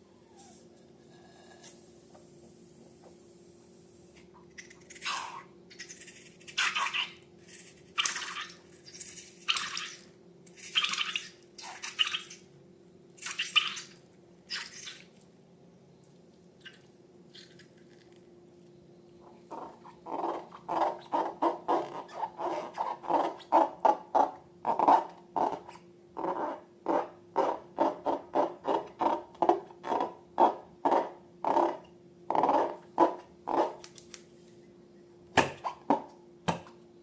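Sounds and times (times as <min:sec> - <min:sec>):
slime squelching: 0:04.8 - 0:12.5, 0:13.2 - 0:15.3.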